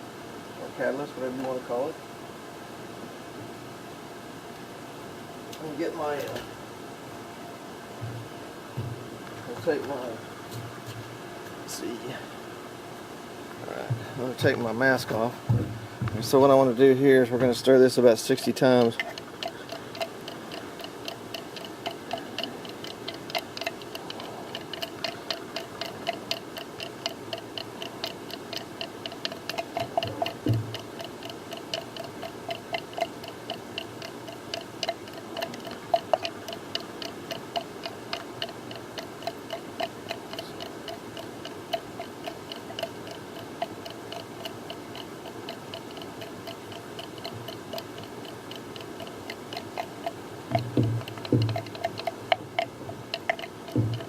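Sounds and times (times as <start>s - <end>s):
stirrer clicking against jar: 16.4s - 54.0s.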